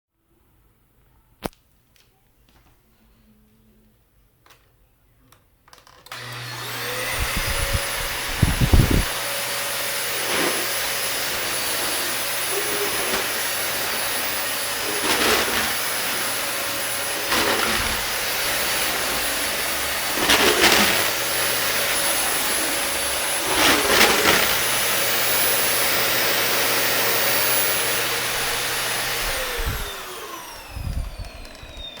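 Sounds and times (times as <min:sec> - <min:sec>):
vacuum cleaner running: 0:06.1 - 0:32.0
vacuum motor winding down: 0:06.1 - 0:32.0
loud noise from brush head: 0:06.2 - 0:31.4.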